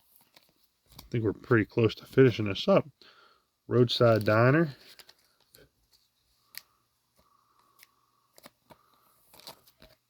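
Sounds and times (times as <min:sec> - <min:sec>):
trading cards being handled: 0:03.7 - 0:10.0.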